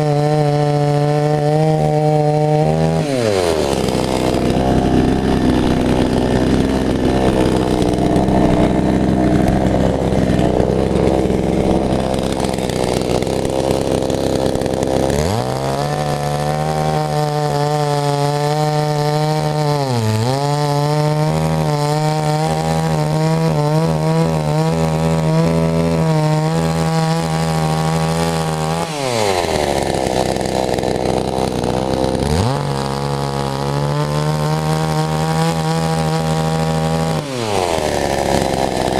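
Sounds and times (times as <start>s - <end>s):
chainsaw engine revving: 0.0s - 38.9s.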